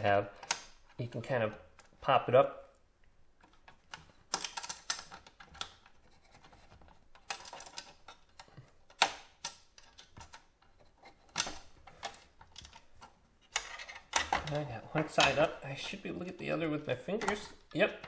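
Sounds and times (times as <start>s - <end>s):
plastic tool scraping and clicking: 3.4s - 16.0s.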